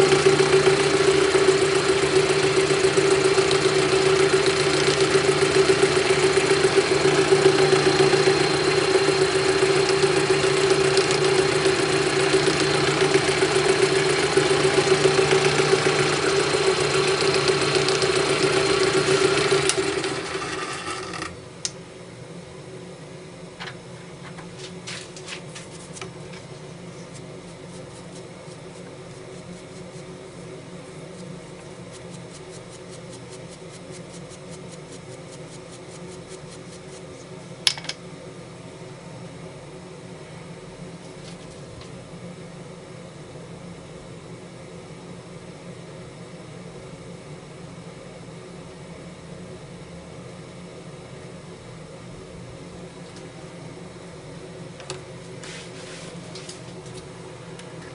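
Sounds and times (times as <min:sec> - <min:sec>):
drill-milling machine humming: 0:00.0 - 0:21.4.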